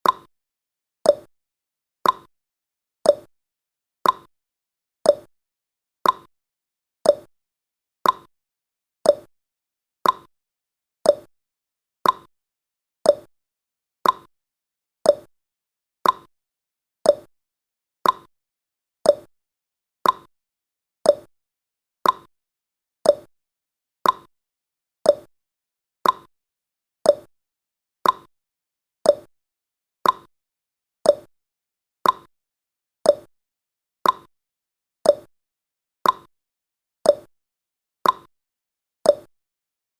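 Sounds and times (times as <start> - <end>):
clock ticking: 2.0 - 2.3, 4.0 - 4.3, 6.0 - 6.3, 8.0 - 8.3, 10.0 - 10.3, 12.0 - 12.3, 14.0 - 14.3, 16.0 - 16.3, 18.0 - 18.3, 20.0 - 20.3, 21.1 - 21.3, 22.0 - 22.3, 24.0 - 24.3, 26.0 - 26.3, 28.0 - 28.3, 29.1 - 29.3, 30.0 - 30.3, 31.1 - 31.3, 32.0 - 32.3, 33.1 - 33.3, 34.0 - 34.3, 35.1 - 35.3, 36.0 - 36.3, 38.0 - 38.3.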